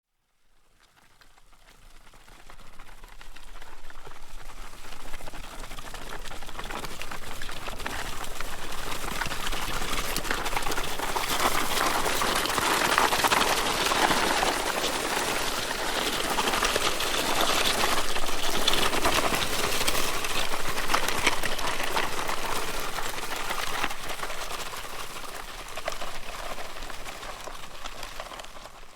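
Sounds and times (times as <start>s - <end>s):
object dragged across gravel: 7.0s - 28.6s.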